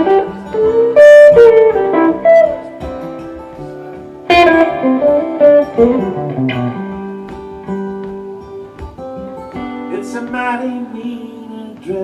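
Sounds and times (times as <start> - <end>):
guitar playing melody lines: 0.0 - 12.0.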